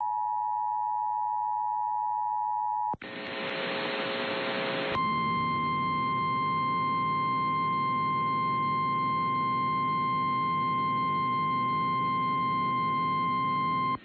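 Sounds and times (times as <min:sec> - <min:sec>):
radio static: 0:03.0 - 0:07.9
two-tone alarm: 0:05.0 - 0:14.0.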